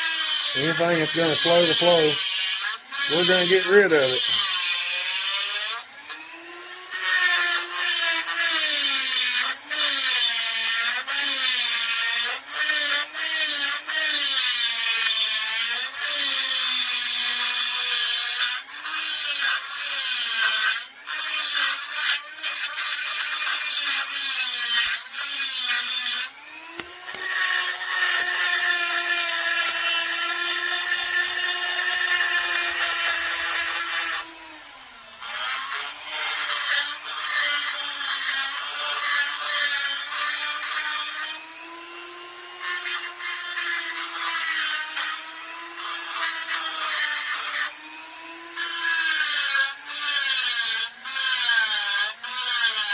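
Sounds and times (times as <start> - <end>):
rotary grinder whining: 0.0 - 18.4, 22.8 - 37.0.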